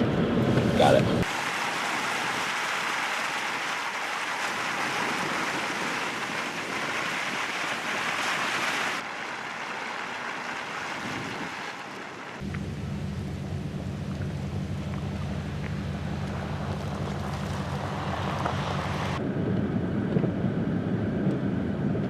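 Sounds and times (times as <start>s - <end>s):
hiss of wind-driven snow: 0.6s - 12.4s
low hum: 12.2s - 22.0s.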